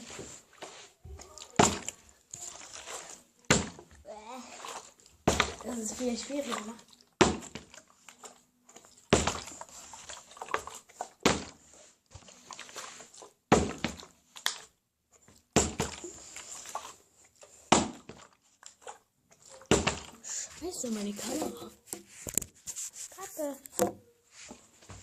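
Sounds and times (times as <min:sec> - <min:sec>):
plastic bottle landing thunk: 0:03.5 - 0:03.9, 0:05.2 - 0:05.6, 0:07.2 - 0:07.7, 0:09.1 - 0:09.5, 0:11.2 - 0:11.6, 0:13.5 - 0:14.0, 0:15.5 - 0:16.0, 0:17.7 - 0:18.2, 0:19.7 - 0:20.2.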